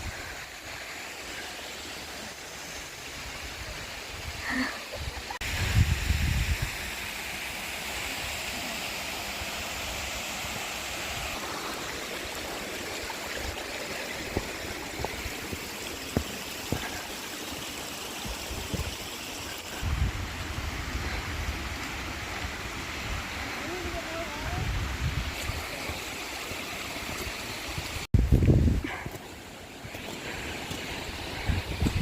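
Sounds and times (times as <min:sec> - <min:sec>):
river rushing: 0:06.7 - 0:28.1.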